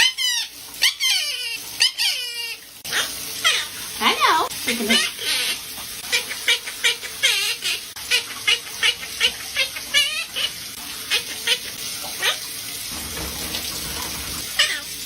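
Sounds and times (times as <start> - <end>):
parrot chirping and whistling: 0.0 - 3.7, 14.6 - 14.9.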